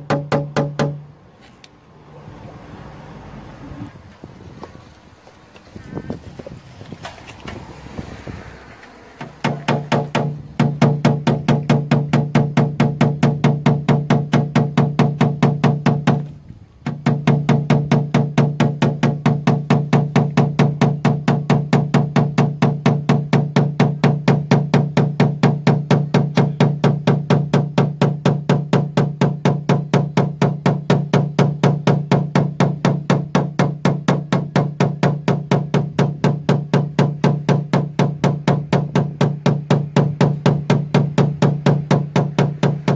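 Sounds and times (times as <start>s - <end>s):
hammer tapping on metal: 0.0s - 1.0s.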